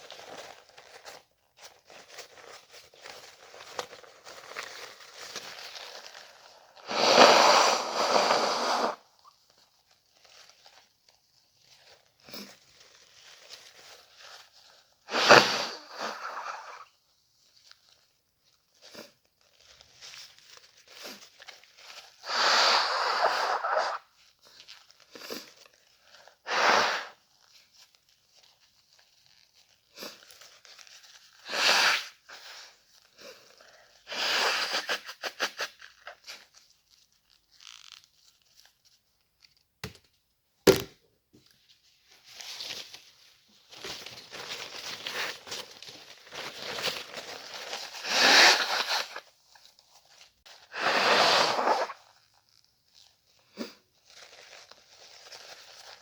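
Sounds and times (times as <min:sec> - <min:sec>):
tissue rustling: 0:00.0 - 0:56.0
person blowing nose: 0:06.8 - 0:09.0, 0:15.1 - 0:16.9, 0:22.2 - 0:24.0, 0:26.4 - 0:27.2, 0:31.4 - 0:32.6, 0:34.1 - 0:35.8, 0:48.0 - 0:49.2, 0:50.7 - 0:52.1.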